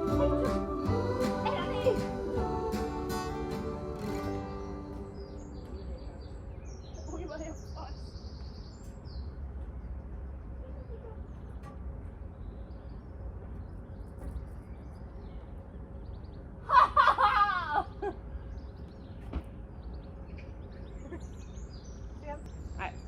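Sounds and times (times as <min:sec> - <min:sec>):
loud wavering vocal call: 0:00.0 - 0:05.1.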